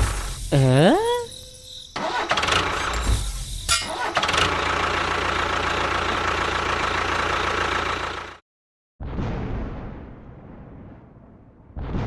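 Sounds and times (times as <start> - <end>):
engine running: 0.0 - 8.4.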